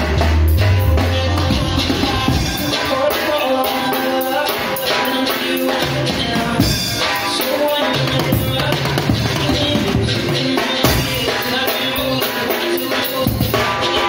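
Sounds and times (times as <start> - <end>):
deep bass: 0.0 - 2.8
drum kit beat: 0.0 - 14.0.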